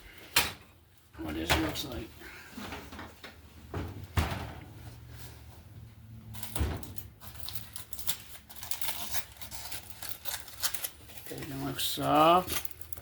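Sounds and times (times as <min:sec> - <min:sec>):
appliance door knocks: 0:03.7 - 0:04.6.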